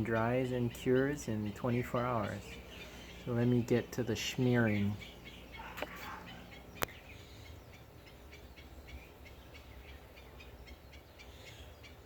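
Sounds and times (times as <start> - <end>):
animal chirping faintly: 4.6 - 12.0.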